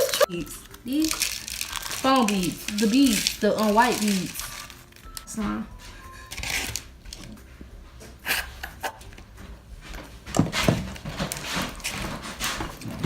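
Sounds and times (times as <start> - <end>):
slime squishing and crackling: 0.0 - 5.4, 6.3 - 7.3.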